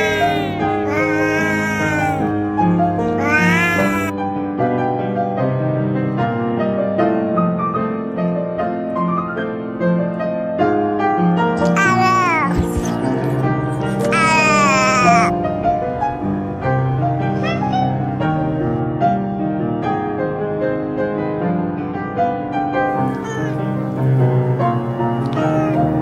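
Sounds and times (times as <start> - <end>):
cat meowing: 0.0 - 2.4, 3.0 - 4.1, 11.6 - 15.3, 22.9 - 26.0.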